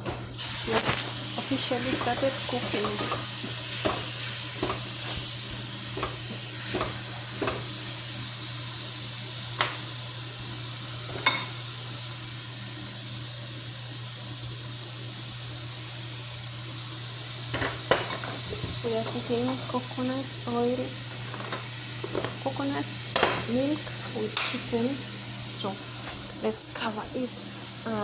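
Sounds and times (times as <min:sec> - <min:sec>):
food sizzling in a pan: 0:00.0 - 0:28.0
utensil tapping a pan: 0:03.8 - 0:05.2, 0:05.9 - 0:07.7, 0:23.1 - 0:23.5.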